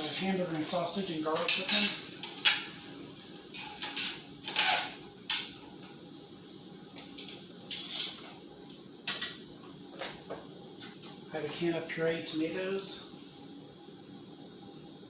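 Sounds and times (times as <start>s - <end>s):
utensils scraping and clinking: 0.0s - 2.8s, 3.5s - 5.5s, 7.2s - 8.3s.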